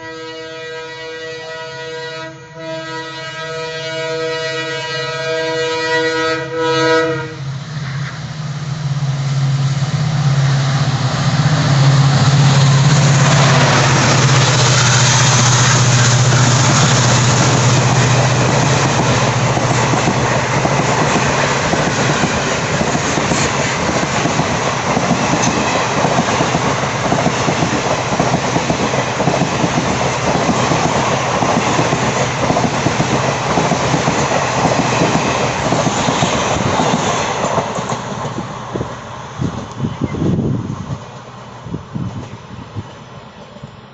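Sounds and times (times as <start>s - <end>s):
locomotive horn: 0.0s - 8.2s, 13.1s - 19.4s
locomotive engine passing: 6.5s - 43.9s
train wheels clattering on rails: 9.9s - 41.3s.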